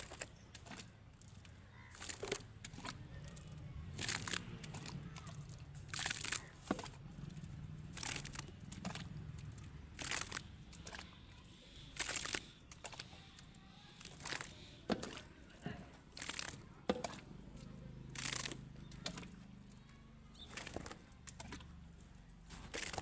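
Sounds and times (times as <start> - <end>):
dry feed pouring: 9.9 - 11.0, 11.6 - 12.6, 16.1 - 17.1.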